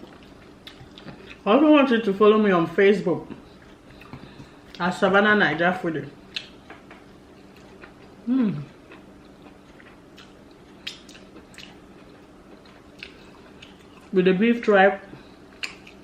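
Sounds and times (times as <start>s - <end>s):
soft chewing: 0.0s - 1.5s, 3.2s - 4.9s, 6.1s - 14.2s, 15.0s - 16.0s
person humming mm: 8.3s - 8.8s.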